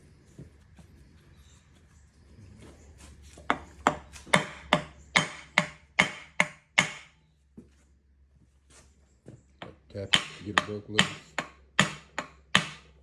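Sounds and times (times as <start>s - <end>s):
hammer tapping on metal pan: 4.3s - 7.1s, 10.1s - 13.0s.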